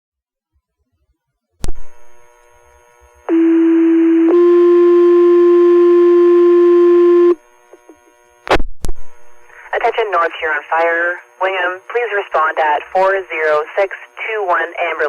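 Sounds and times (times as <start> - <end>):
radio hiss: 7.6 - 15.0
radio transmitter click: 7.7 - 9.4.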